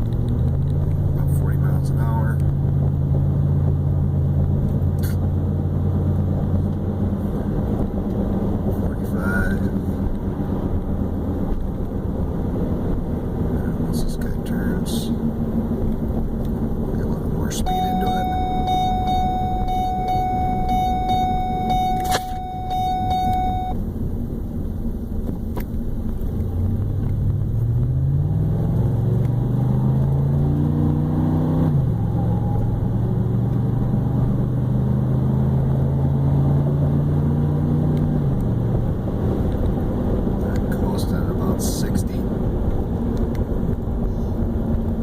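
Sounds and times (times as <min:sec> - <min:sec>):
pickup truck engine accelerating: 0:00.0 - 0:45.0
steady high tone: 0:17.6 - 0:23.8.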